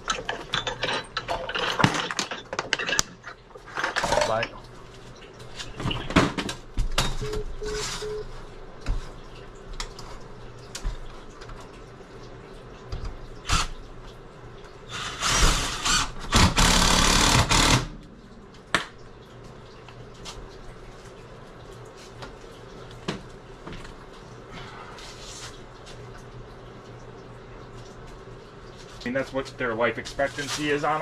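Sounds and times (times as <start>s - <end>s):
small power tool running: 14.9s - 17.9s.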